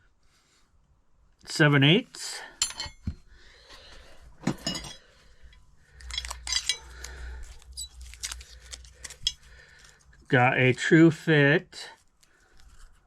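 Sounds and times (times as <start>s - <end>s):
steel sockets clinking: 2.6s - 3.2s, 4.4s - 5.0s, 6.0s - 7.2s
handling noise: 4.3s - 5.1s.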